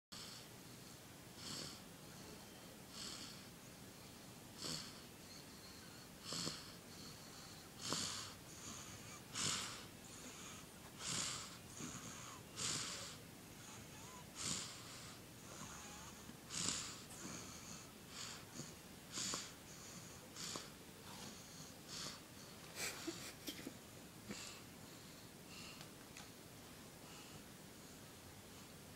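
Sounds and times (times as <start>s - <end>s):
baby snoring softly: 0.1s - 23.1s.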